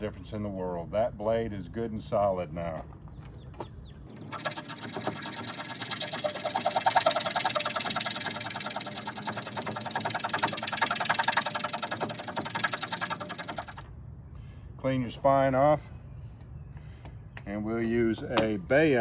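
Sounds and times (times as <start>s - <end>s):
saw blade scraping wood: 4.2s - 13.8s.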